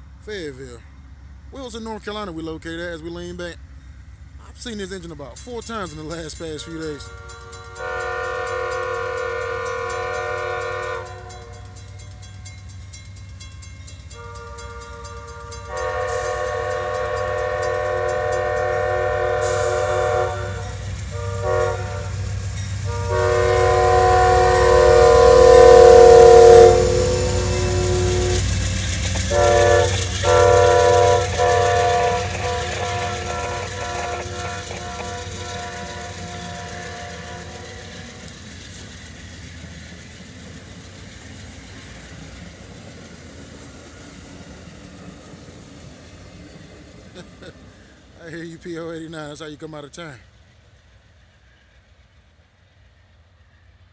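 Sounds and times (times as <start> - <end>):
train rumbling on rails: 0.0 - 53.9
train horn blasts: 6.8 - 11.7, 14.1 - 28.6, 29.3 - 38.2.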